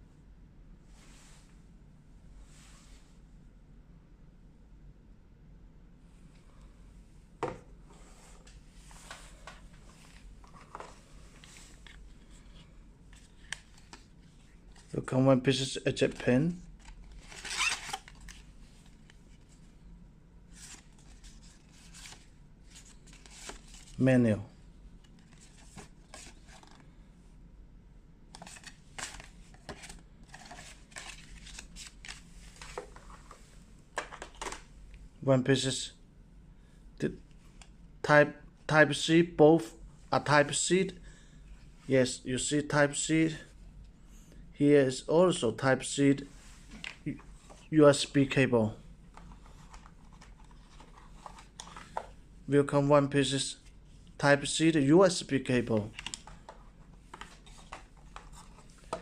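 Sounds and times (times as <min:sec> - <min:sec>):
cardboard packaging rustling: 0:16.8 - 0:18.4, 0:28.4 - 0:33.3.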